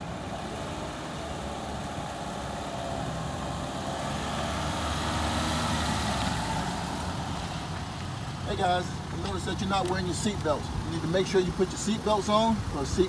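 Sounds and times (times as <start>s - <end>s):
car engine running: 4.5s - 13.0s.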